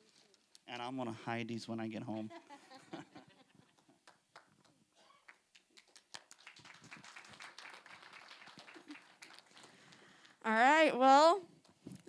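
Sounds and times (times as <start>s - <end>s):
congregation applauding: 4.0s - 10.2s.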